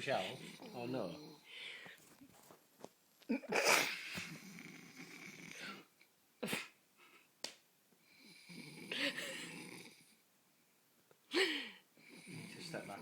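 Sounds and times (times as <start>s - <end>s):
man snoring: 8.3s - 10.0s, 12.1s - 13.0s.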